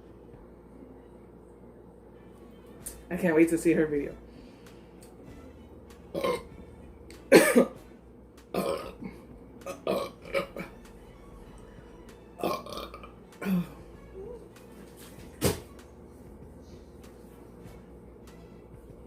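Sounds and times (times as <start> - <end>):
woman burping: 6.1 - 6.5, 7.3 - 7.8, 8.5 - 10.8, 12.4 - 13.8.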